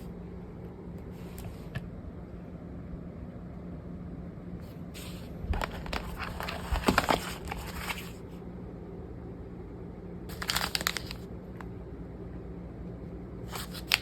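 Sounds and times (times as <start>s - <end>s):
steady low hum: 0.0s - 14.0s
packaging crinkling and rustling: 5.5s - 8.2s, 10.3s - 11.7s, 13.5s - 14.0s.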